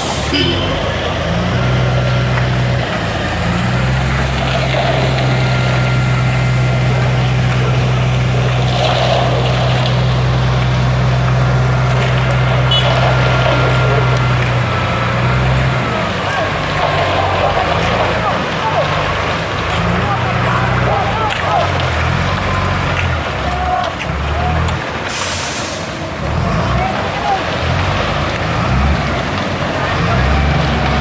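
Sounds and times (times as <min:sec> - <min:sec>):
large engine humming steadily: 0:00.0 - 0:31.0.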